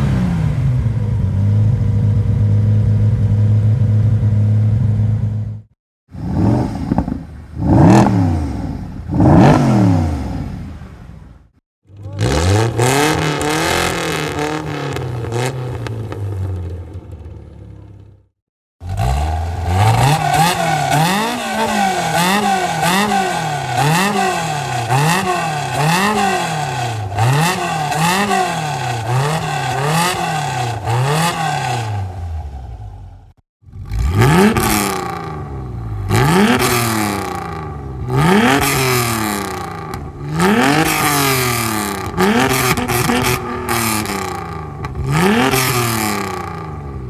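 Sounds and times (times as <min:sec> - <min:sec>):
car engine revving: 0:00.0 - 0:10.9, 0:11.9 - 0:18.0, 0:18.8 - 0:47.0
car engine revving repeatedly: 0:06.1 - 0:10.5, 0:12.0 - 0:16.0, 0:18.8 - 0:32.6, 0:33.6 - 0:47.0.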